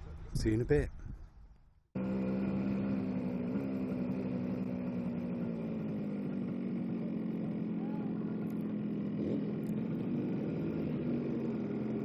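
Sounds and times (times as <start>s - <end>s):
two-stroke motorcycle engine running: 2.0s - 12.0s.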